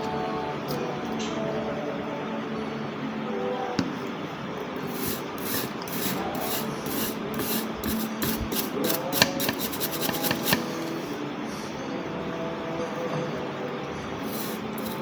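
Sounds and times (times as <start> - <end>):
brush scrubbing circuit board: 4.8 - 10.8, 14.3 - 15.0.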